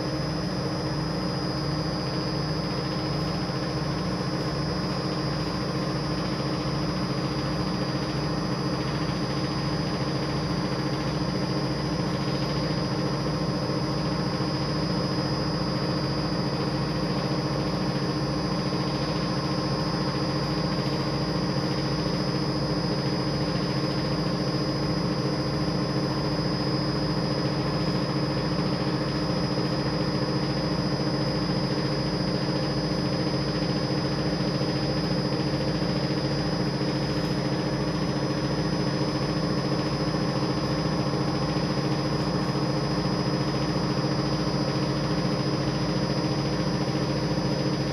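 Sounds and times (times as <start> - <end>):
machine humming with flutter: 0.0 - 47.9
thin high whine: 0.0 - 47.9.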